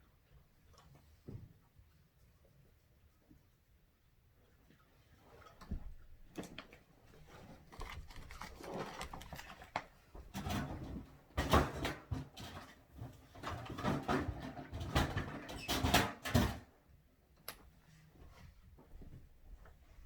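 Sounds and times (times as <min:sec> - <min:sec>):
dog snuffling and licking: 0:07.1 - 0:10.0.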